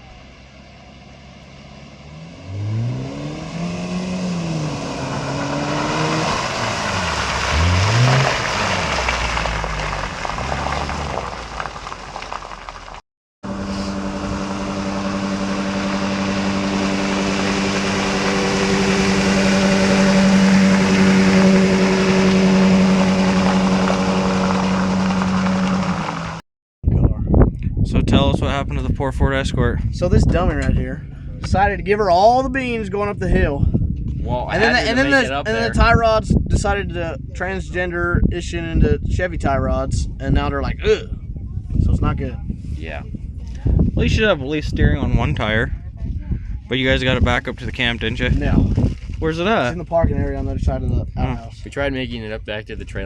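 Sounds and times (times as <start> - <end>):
off-road vehicle engine revving: 0.0 - 26.4, 30.0 - 38.4
engine running at high revs: 1.9 - 11.4, 13.4 - 26.4.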